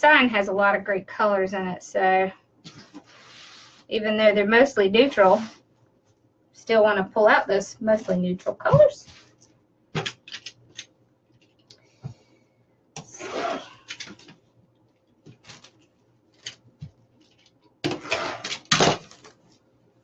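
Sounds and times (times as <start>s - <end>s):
ribbon and mesh rustling: 15.2s - 17.6s.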